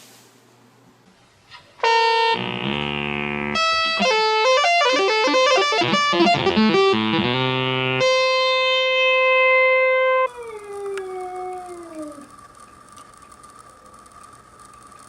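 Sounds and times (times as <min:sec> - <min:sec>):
instrument playing notes: 0:01.8 - 0:12.3.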